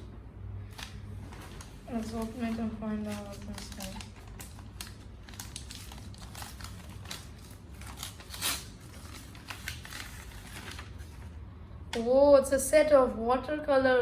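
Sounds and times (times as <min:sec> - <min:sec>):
wrapping paper tearing and crinkling: 0:00.6 - 0:11.4.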